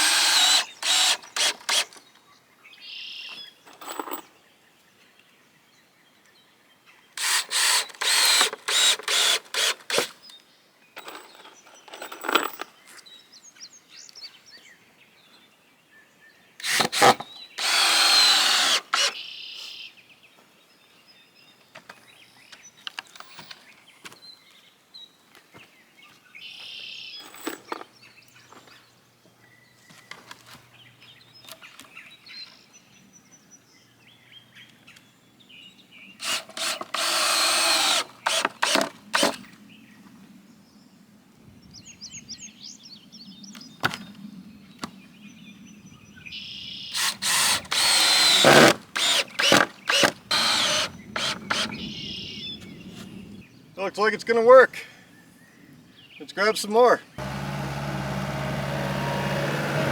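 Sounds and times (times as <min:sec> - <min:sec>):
cordless drill driving screws: 0:00.0 - 0:02.0, 0:07.2 - 0:10.2, 0:16.6 - 0:19.2, 0:36.2 - 0:39.4, 0:46.9 - 0:51.8
bird chirps: 0:49.8 - 0:53.8.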